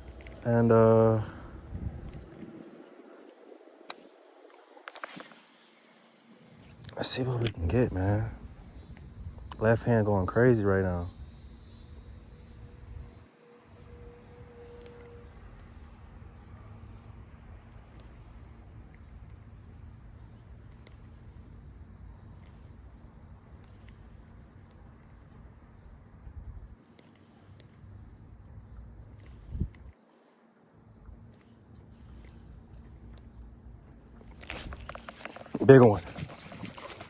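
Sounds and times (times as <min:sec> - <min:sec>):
wind rumble on microphone: 0:00.0 - 0:03.7, 0:07.5 - 0:13.3, 0:26.0 - 0:26.8, 0:29.2 - 0:30.0
high-pitched insect trill: 0:00.0 - 0:37.0.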